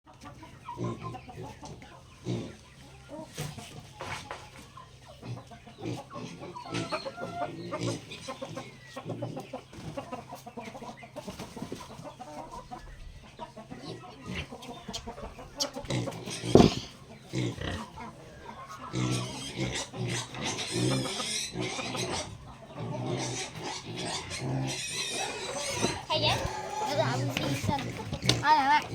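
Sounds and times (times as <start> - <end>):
chickens clucking: 0.1 - 28.9.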